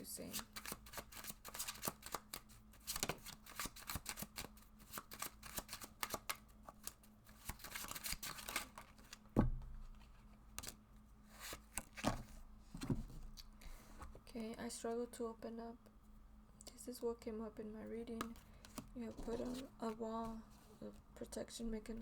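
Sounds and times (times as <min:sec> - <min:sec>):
cards shuffling: 0:00.3 - 0:10.8, 0:18.2 - 0:20.8.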